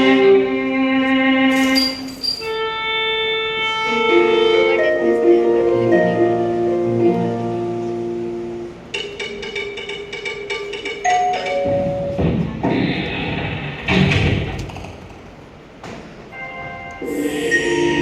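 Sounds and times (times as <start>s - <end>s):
instrumental music with held notes: 0.0s - 12.2s, 16.4s - 18.0s.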